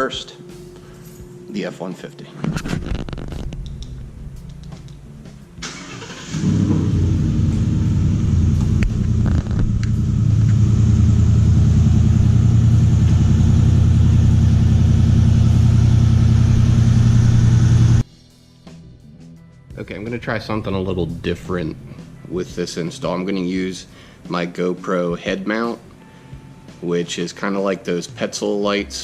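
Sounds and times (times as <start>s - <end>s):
car engine starting and idling: 2.8s - 18.0s.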